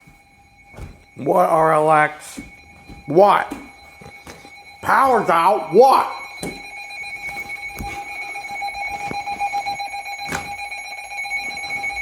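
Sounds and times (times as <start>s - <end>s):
steady electronic alert tone: 0.5s - 8.9s.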